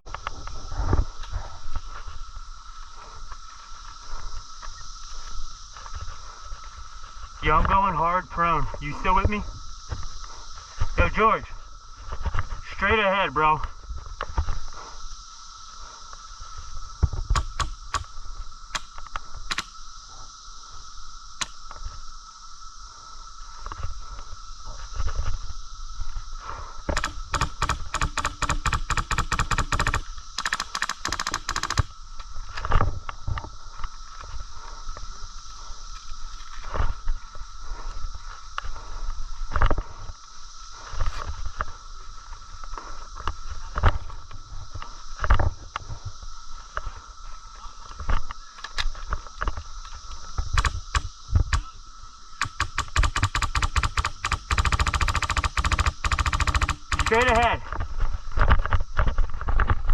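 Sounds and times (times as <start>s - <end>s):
wind rumble on microphone: 0.0s - 3.4s, 32.1s - 47.3s
airsoft gun shots: 52.4s - 57.4s.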